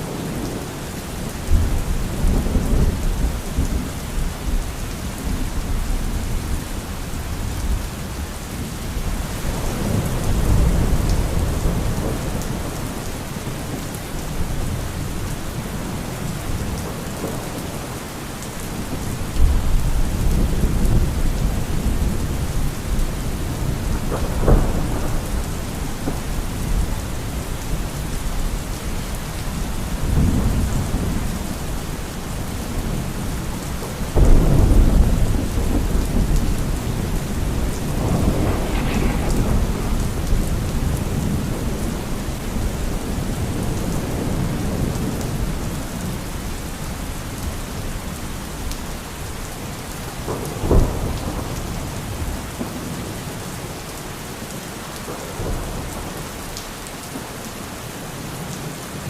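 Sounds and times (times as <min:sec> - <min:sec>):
heavy rain hissing: 0:00.0 - 0:58.5
rolling thunder rumbling: 0:08.6 - 0:13.7, 0:14.3 - 0:46.6
sharp thunder crack: 0:34.2 - 0:42.2.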